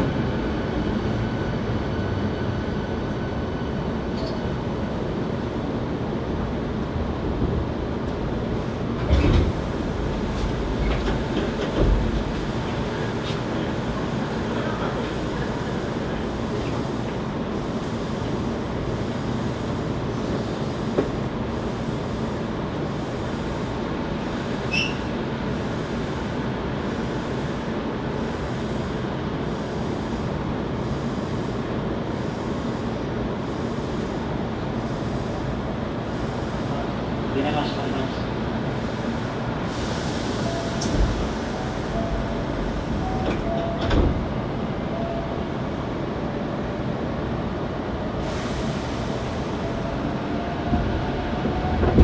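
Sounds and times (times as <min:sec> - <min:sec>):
train running rumble: 0:00.0 - 0:52.0.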